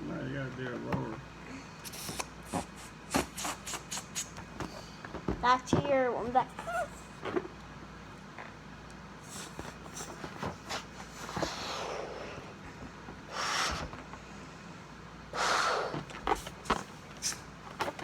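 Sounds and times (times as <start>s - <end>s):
air rushing into balloon: 1.8s - 4.4s, 13.3s - 14.0s
rubber balloon handling clicks: 1.8s - 7.7s, 15.9s - 18.0s.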